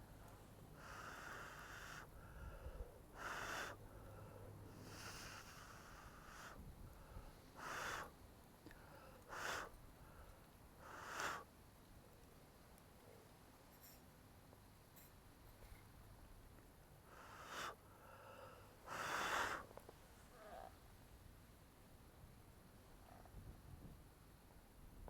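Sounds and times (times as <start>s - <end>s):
breathy puffs of air: 0.7s - 11.5s, 17.1s - 19.8s.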